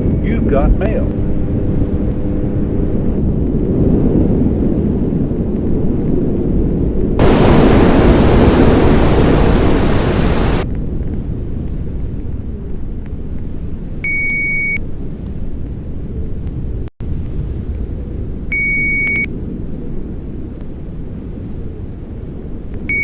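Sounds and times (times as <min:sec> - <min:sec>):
steady low rumbling: 0:05.8 - 0:10.6
loud static hiss: 0:07.2 - 0:10.6.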